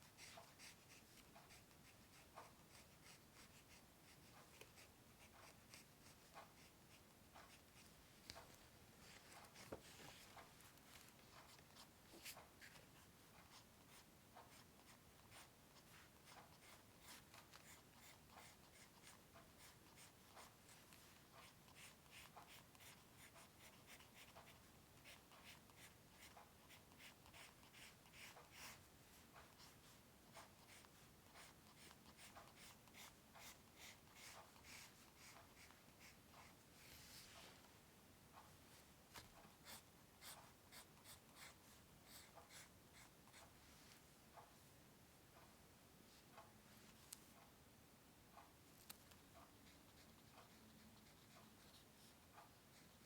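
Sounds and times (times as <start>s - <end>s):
pencil scratching on paper: 0.0s - 7.9s, 11.3s - 36.6s, 39.6s - 43.5s, 49.6s - 53.0s.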